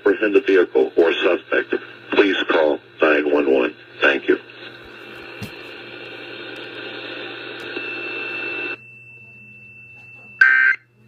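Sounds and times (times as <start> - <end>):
radio static hiss: 0.0 - 8.8
faint steady high tone: 7.7 - 11.0.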